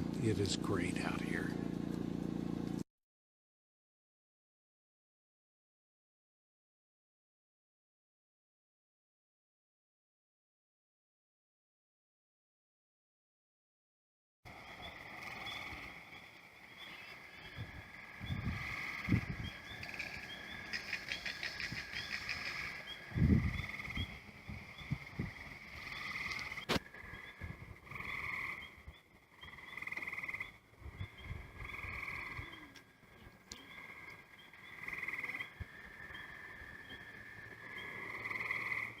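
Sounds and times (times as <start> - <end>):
pulsed animal calls: 14.5 - 39.0.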